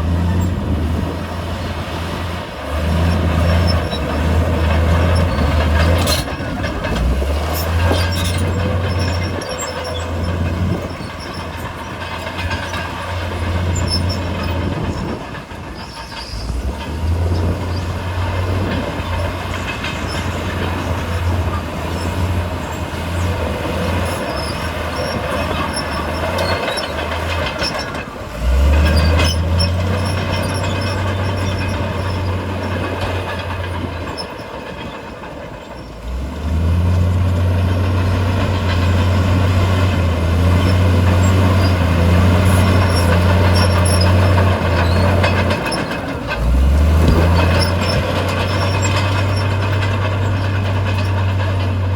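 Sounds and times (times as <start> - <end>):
bulldozer diesel engine under load: 0.0 - 51.9
steel tracks squealing and clanking: 0.0 - 51.9.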